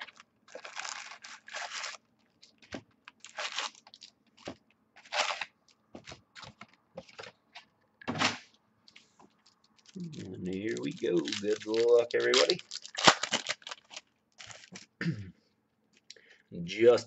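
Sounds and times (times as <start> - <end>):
packaging crinkling and tearing: 0.0 - 6.7, 9.3 - 14.9.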